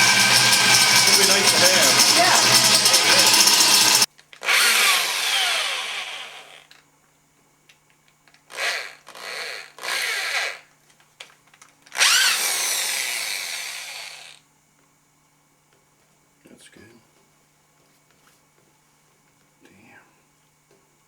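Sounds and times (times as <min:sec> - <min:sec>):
power drill boring through metal: 0:00.0 - 0:06.6, 0:12.0 - 0:14.4.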